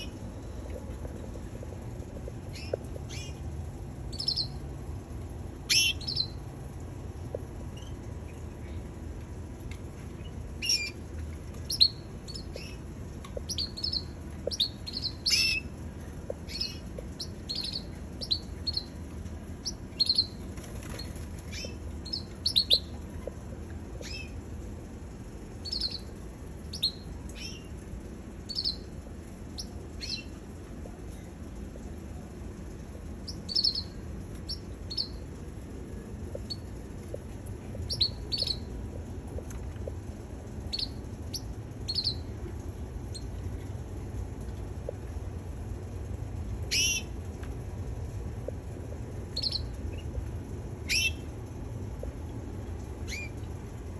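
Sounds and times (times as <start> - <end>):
canary chirping: 2.5 - 3.4, 4.1 - 4.6, 5.6 - 6.4, 10.2 - 11.0, 11.6 - 15.8, 16.4 - 19.0, 19.6 - 23.0, 24.0 - 24.4, 25.6 - 26.1, 26.7 - 27.7, 28.5 - 28.9, 29.6 - 30.3, 33.2 - 35.2, 36.4 - 36.7, 37.8 - 38.7, 40.7 - 42.3, 46.7 - 47.1, 49.4 - 50.0, 50.9 - 51.3, 53.0 - 53.4.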